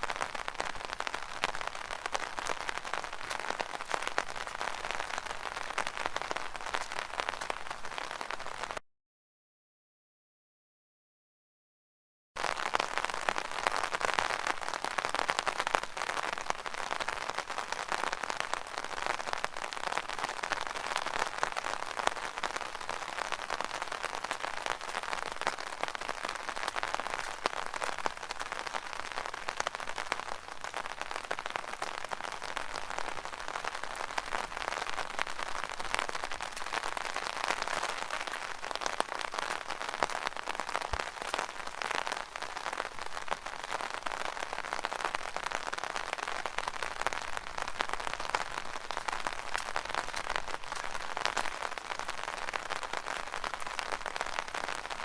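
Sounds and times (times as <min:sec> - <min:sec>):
rain pattering on an umbrella: 0:00.0 - 0:08.8, 0:12.4 - 0:55.0.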